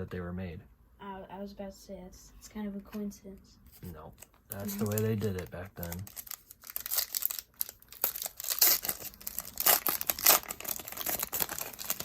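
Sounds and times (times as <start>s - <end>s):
foil wrapper crinkling: 4.2s - 12.0s.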